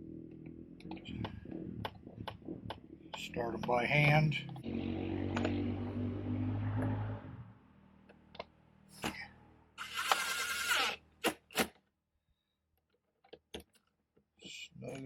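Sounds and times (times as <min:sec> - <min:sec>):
impact driver running: 0:09.8 - 0:11.7.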